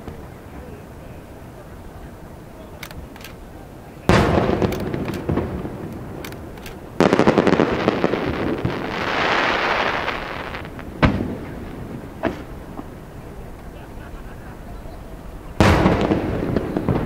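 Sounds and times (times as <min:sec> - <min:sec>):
fireworks bangs: 0:00.0 - 0:17.0
fireworks crackling: 0:00.0 - 0:17.0
fireworks hiss: 0:02.4 - 0:13.2.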